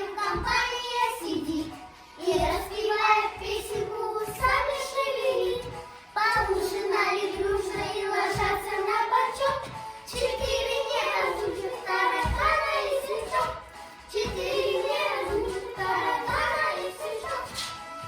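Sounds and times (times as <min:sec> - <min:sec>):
child singing: 0:00.0 - 0:17.8
musical accompaniment: 0:00.0 - 0:18.0.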